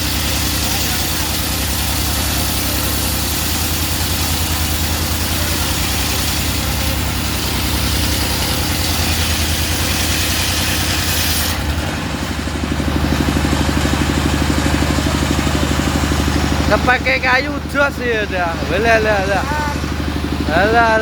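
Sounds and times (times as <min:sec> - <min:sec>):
saw blade cutting log hiss: 0:00.0 - 0:11.8
sawmill engine pulsing: 0:00.0 - 0:21.0.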